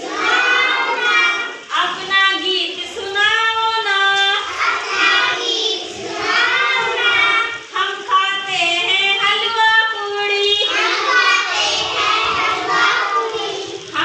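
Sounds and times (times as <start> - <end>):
child singing: 0.0 - 1.7, 3.9 - 9.5, 10.5 - 14.0.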